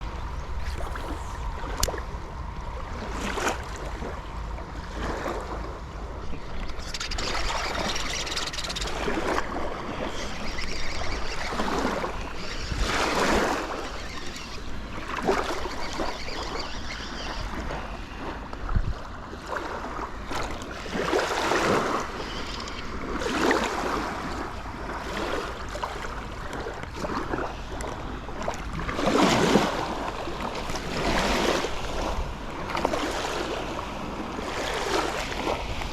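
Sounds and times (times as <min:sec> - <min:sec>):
waves splashing at the shore: 0:00.0 - 0:35.9
wind rumbling on microphone: 0:00.0 - 0:35.9.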